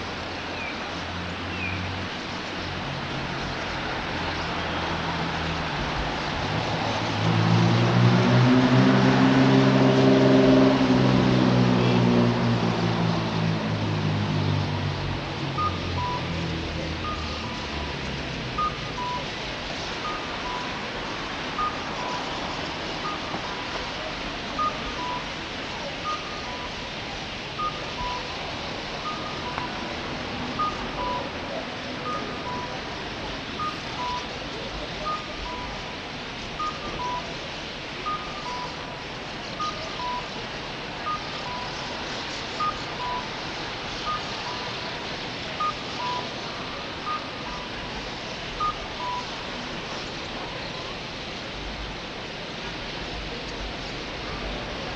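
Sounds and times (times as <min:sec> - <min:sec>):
two-tone electronic beeping: 0:15.6 - 0:16.4, 0:17.0 - 0:17.6, 0:30.6 - 0:31.4, 0:32.0 - 0:32.8, 0:33.6 - 0:34.3, 0:35.0 - 0:35.8, 0:36.6 - 0:37.3, 0:39.6 - 0:40.3, 0:45.6 - 0:46.4, 0:48.6 - 0:49.3.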